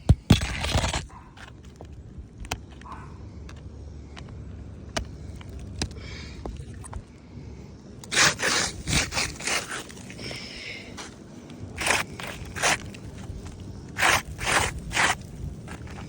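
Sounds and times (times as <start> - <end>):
scraping on roof shingles: 8.1 - 11.1, 11.8 - 16.0.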